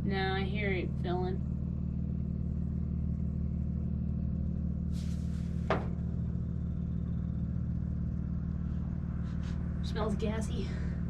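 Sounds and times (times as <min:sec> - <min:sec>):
fuel pump humming: 0:05.0 - 0:07.4.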